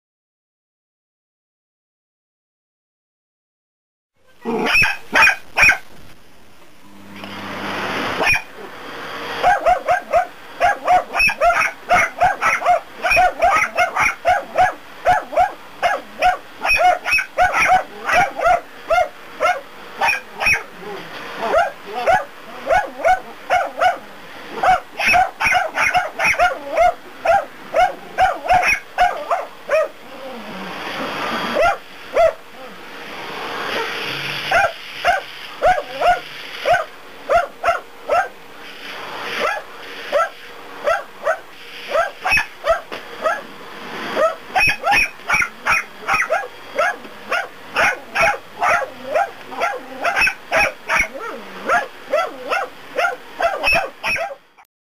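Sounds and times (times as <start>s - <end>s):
dog barking rapidly: 4.4s - 5.9s, 8.2s - 8.6s, 9.4s - 20.7s, 21.4s - 30.0s, 31.5s - 32.5s, 33.7s - 38.4s, 39.4s - 43.5s, 44.2s - 54.6s
vacuum cleaner rushing: 7.0s - 16.6s, 21.0s - 53.6s.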